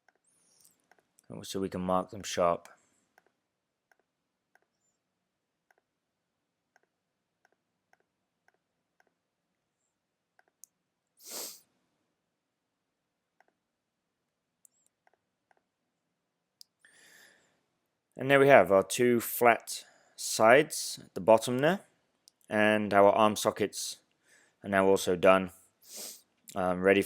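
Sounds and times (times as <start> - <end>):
short breath: 11.2 - 11.7, 16.8 - 17.6, 19.8 - 20.2, 24.2 - 24.6, 25.8 - 26.2.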